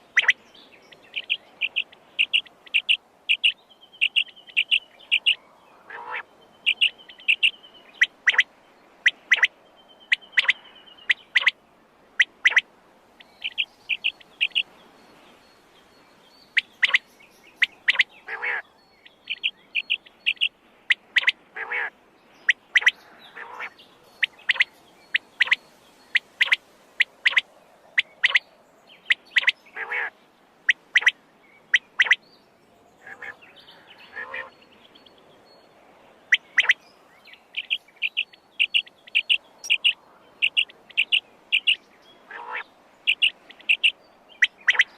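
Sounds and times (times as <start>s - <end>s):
quail calling: 0.0s - 0.4s, 1.1s - 9.5s, 10.1s - 11.6s, 12.2s - 12.6s, 13.2s - 14.7s, 16.6s - 17.0s, 17.6s - 18.6s, 19.3s - 28.4s, 29.1s - 30.1s, 30.7s - 32.2s, 33.0s - 34.5s, 36.3s - 36.8s, 37.4s - 44.9s.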